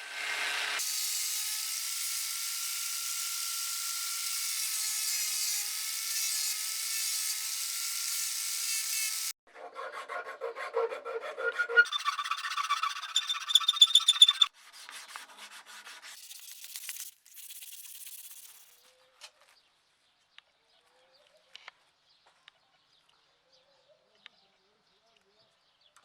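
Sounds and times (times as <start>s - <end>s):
file scraping with squealing: 8.0s - 14.5s.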